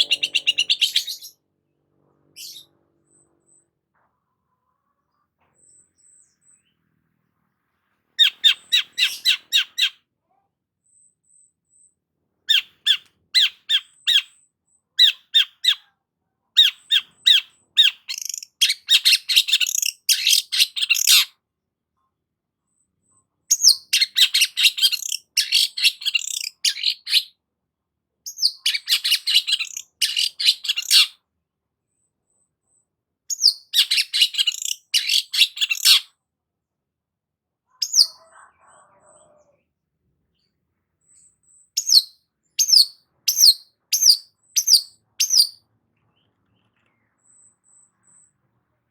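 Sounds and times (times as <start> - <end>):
shrike singing: 0.0 - 1.4.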